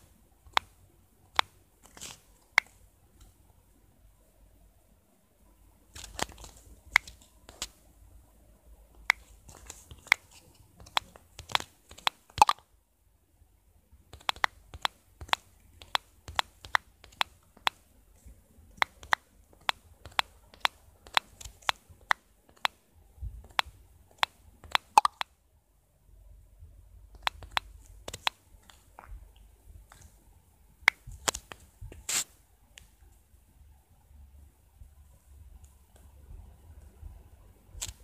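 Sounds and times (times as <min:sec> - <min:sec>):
sharp irregular clicks: 0:06.0 - 0:07.8, 0:09.0 - 0:12.7, 0:14.1 - 0:17.9, 0:18.7 - 0:22.8, 0:23.4 - 0:25.4, 0:27.1 - 0:30.1.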